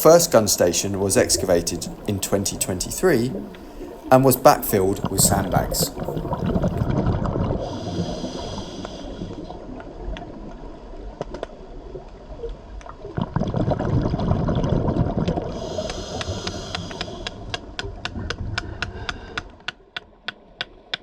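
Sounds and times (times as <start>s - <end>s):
gurgle of exhaled bubbles: 0.3s - 11.1s, 11.8s - 19.3s
regulator air hiss: 7.7s - 9.4s, 15.6s - 17.5s.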